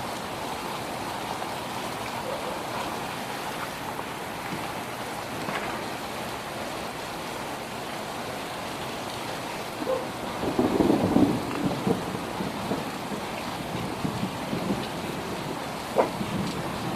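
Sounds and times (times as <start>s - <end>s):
steady rain falling: 0.0s - 16.9s
thunder rumbling: 9.8s - 16.9s.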